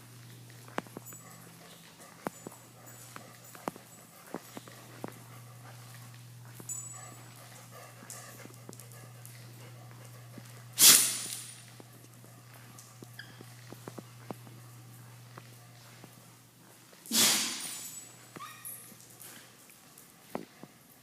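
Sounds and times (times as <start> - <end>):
dog paws clicking and tapping: 0.0 - 21.0
steady low hum: 0.0 - 21.0
dog hissing burst: 10.8 - 11.6, 17.1 - 17.9.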